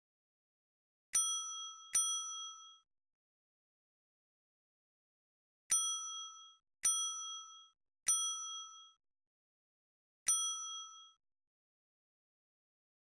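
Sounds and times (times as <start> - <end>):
bell-like ding: 10.3 - 11.2.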